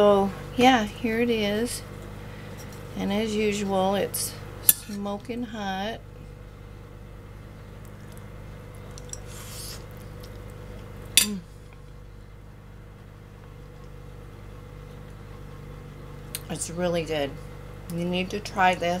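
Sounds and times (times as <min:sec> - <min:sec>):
low room hum: 0:00.0 - 0:19.0.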